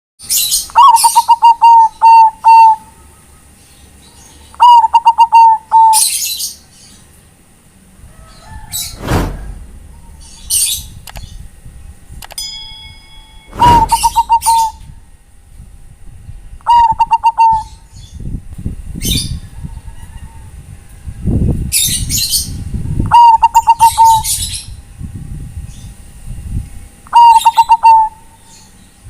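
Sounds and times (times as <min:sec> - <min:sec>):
dove cooing: 0:00.8 - 0:02.9, 0:04.6 - 0:06.2, 0:13.5 - 0:14.8, 0:16.6 - 0:17.9, 0:23.1 - 0:24.3, 0:27.1 - 0:28.2
low rumble: 0:08.0 - 0:12.3, 0:13.4 - 0:16.6.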